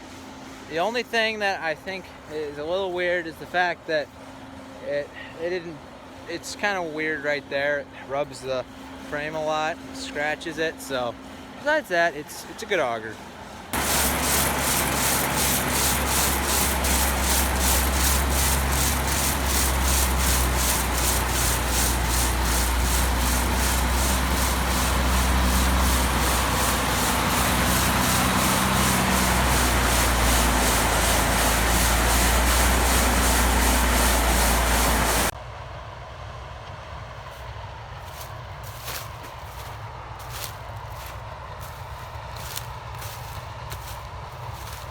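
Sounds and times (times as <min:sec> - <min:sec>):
grain auger droning and scraping: 0:13.8 - 0:35.4.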